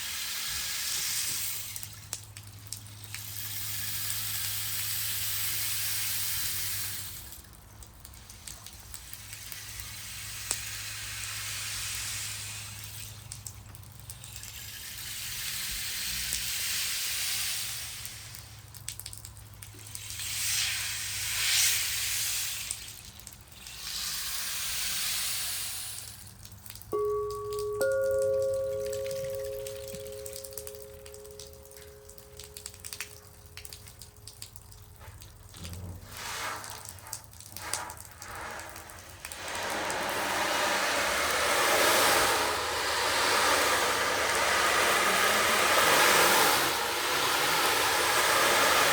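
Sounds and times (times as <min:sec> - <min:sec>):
rushing wave-like hiss: 0:37.7 - 0:48.9.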